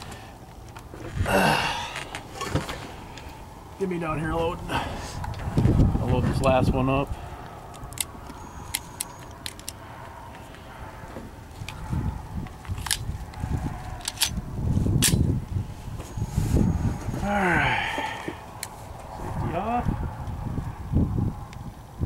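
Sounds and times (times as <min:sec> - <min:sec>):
metallic clicks of cartridges loading: 0:07.7 - 0:09.8, 0:14.0 - 0:14.4.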